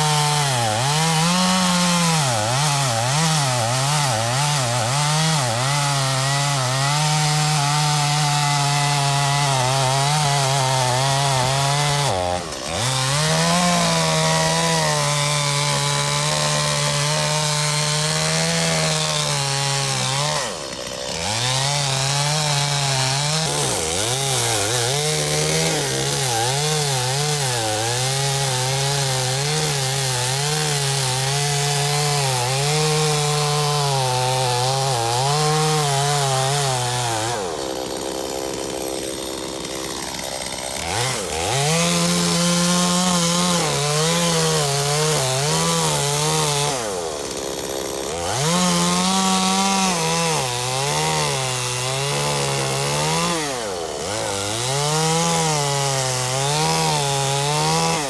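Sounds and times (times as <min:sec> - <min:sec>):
chainsaw cutting wood: 0:00.0 - 0:58.0.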